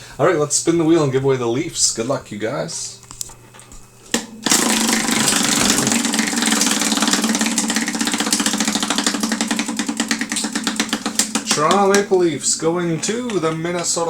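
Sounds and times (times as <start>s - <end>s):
prize wheel pointer ticking: 4.4s - 14.0s.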